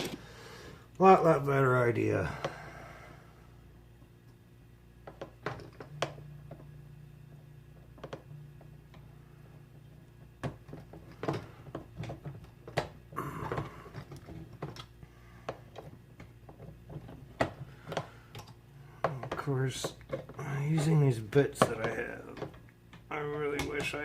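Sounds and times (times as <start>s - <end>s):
steady low hum: 0.0s - 24.0s
hand tools clicking and tapping: 15.5s - 24.0s.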